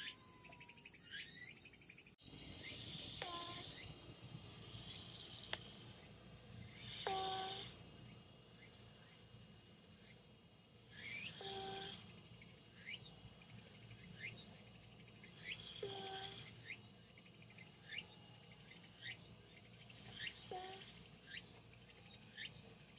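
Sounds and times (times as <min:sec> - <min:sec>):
crickets chirping: 0:00.0 - 0:22.9
cat snoring softly: 0:11.4 - 0:11.9.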